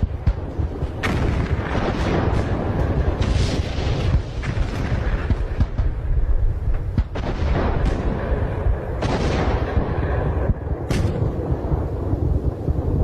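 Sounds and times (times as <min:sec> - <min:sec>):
constant low rumble: 0:00.0 - 0:13.0
distant artillery and gunfire reports: 0:00.0 - 0:13.0.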